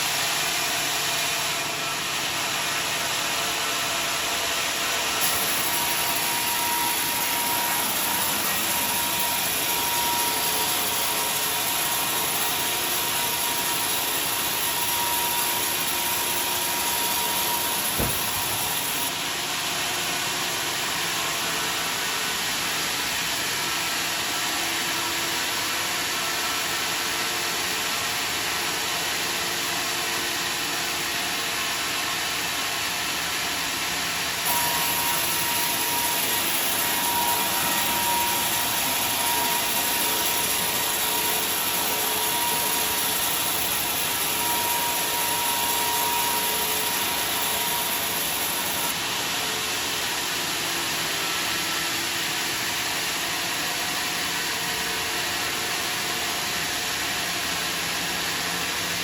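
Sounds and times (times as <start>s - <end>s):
sawmill machinery running: 0.0s - 59.0s
high whine: 17.1s - 19.2s
brief knock: 18.0s - 18.6s.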